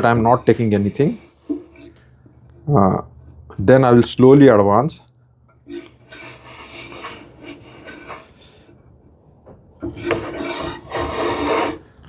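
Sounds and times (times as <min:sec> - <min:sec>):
hand plane shaving wood: 0:00.0 - 0:02.0, 0:05.7 - 0:08.8, 0:09.8 - 0:12.0.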